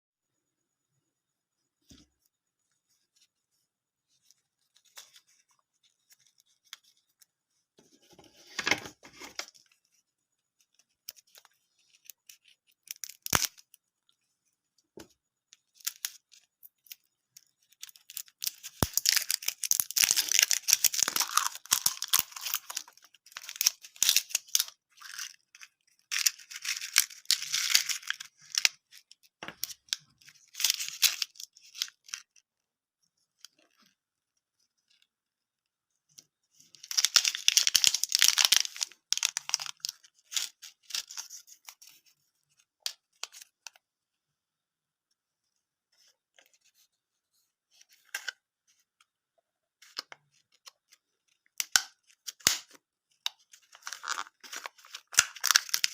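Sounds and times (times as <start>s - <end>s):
plastic wrapper crinkling and tearing: 10.8s - 13.8s, 15.7s - 32.4s, 36.6s - 43.8s, 49.8s - 55.9s
plastic packaging rustling: 17.8s - 29.0s.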